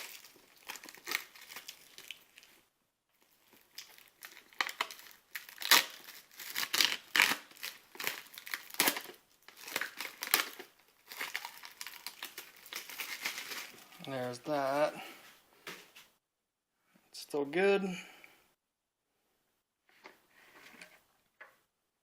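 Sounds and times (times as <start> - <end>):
plastic shrink wrap crinkling: 0.0 - 2.6, 3.2 - 14.4.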